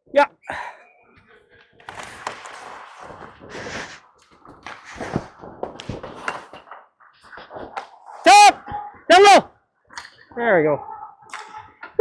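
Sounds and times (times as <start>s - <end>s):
skates scraping and rustling: 1.2s - 9.1s.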